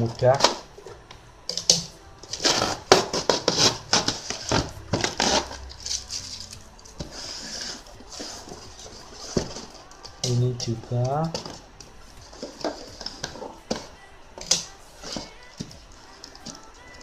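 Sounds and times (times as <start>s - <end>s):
plastic crackling and rustling: 0.0s - 17.0s
scissors snipping plastic: 1.5s - 5.5s.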